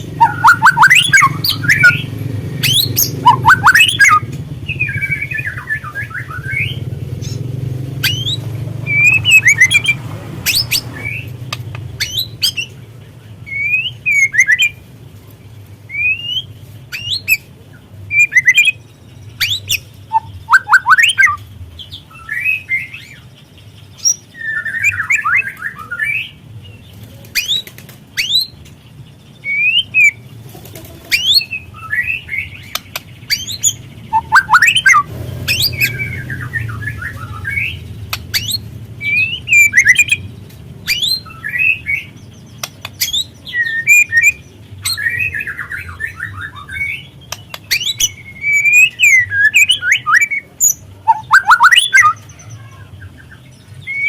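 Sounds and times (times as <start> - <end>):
bird chirping and chattering: 0.0 - 14.8, 15.9 - 54.0.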